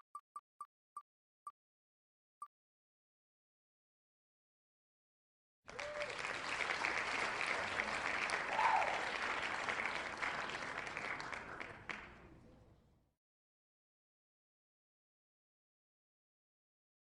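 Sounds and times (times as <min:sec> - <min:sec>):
crowd applauding: 0:05.7 - 0:12.6.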